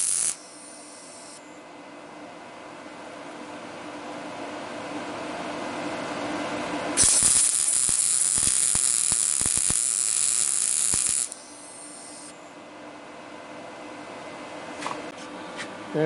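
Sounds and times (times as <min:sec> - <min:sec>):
welding arc crackling sizzle: 0:00.0 - 0:01.4, 0:07.0 - 0:12.4
steady hum: 0:00.0 - 0:16.0.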